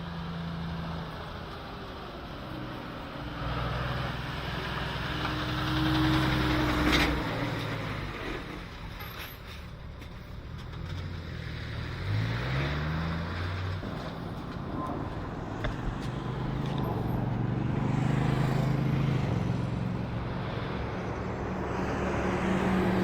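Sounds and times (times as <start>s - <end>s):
motor vehicle engines running: 0.0s - 23.0s
engine revving up: 11.4s - 23.0s.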